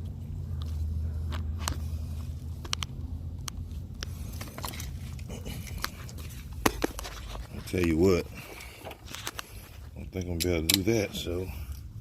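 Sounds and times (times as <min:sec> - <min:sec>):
steady low hum: 0:00.0 - 0:12.0
camera handling clicks and knocks: 0:02.6 - 0:04.8, 0:05.8 - 0:07.3.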